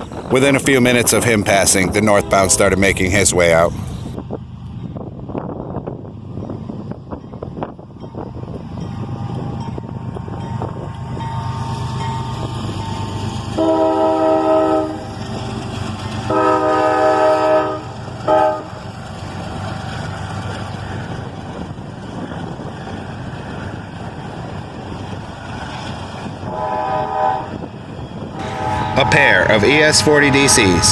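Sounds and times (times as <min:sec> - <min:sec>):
diesel locomotive rumble: 0:00.0 - 0:30.9
locomotive air horn blasts: 0:01.6 - 0:02.8, 0:13.5 - 0:15.1, 0:16.3 - 0:18.8, 0:26.4 - 0:27.7, 0:28.4 - 0:30.9.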